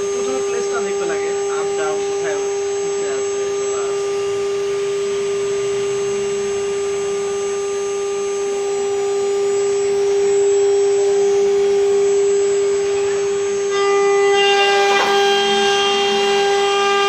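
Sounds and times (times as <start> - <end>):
cnc router spindle whine: 0.0 - 17.0.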